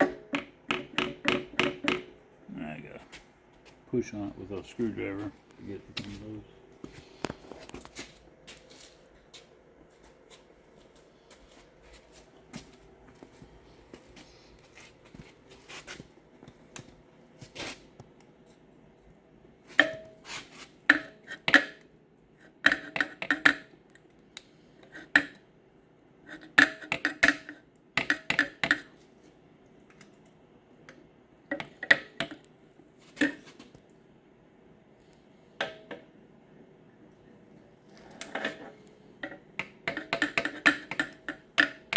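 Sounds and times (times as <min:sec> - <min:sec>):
screwdriver clanking on metal: 0:22.7 - 0:23.6, 0:38.1 - 0:41.9.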